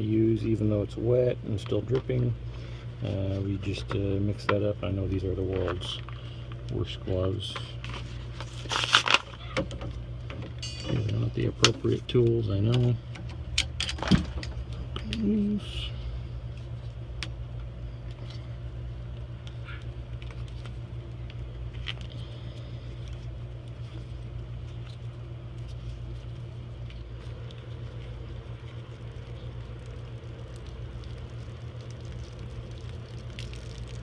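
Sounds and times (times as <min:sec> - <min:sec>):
steady low hum: 0:00.0 - 0:34.0
faint clicks and rustles: 0:16.5 - 0:34.0.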